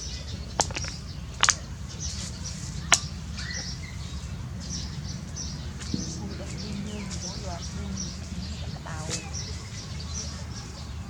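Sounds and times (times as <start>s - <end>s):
small birds chirping: 0.0s - 11.0s
low rumble: 4.6s - 8.9s.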